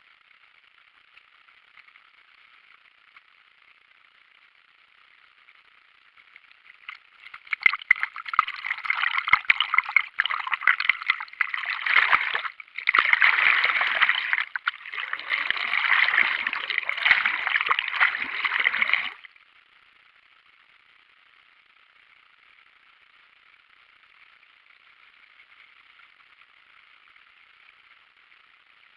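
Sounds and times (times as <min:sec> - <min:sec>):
waterfall rushing and splashing: 0:11.6 - 0:19.1.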